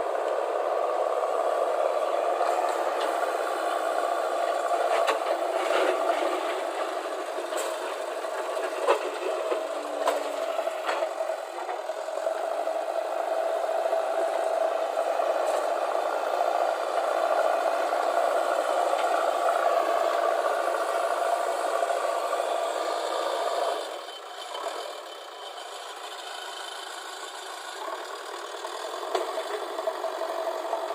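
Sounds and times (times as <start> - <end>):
heavy machinery diesel engine: 0.0 - 30.9.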